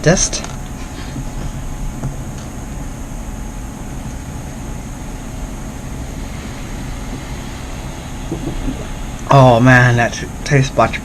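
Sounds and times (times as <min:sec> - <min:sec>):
background hum and hiss: 0:00.0 - 0:11.0
faint high whine: 0:00.0 - 0:11.0.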